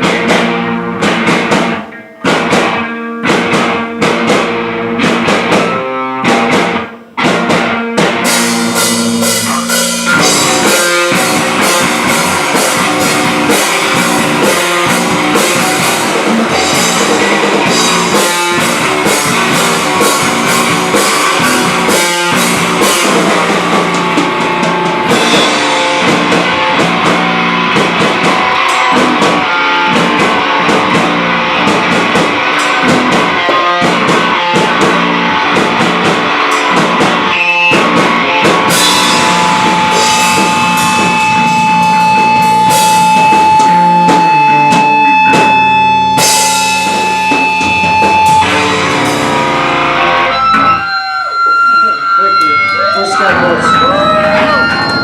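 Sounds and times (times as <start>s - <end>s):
rock band playing live: 0.0s - 55.0s
steady high held note: 8.3s - 30.2s, 38.6s - 55.0s.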